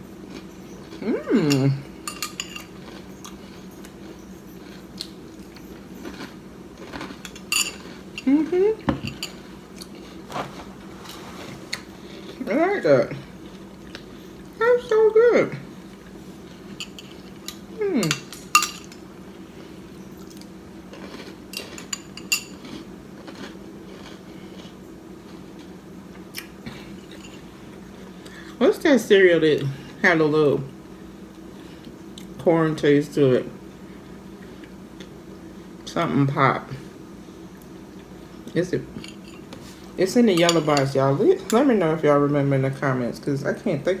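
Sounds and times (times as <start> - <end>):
steady low hum: 0.0 - 44.0
chewing crunchy cereal: 0.1 - 12.5, 13.1 - 15.0, 15.6 - 28.6
spoon clinking against bowl: 1.5 - 2.8, 7.2 - 8.3, 16.8 - 19.0, 40.3 - 40.9.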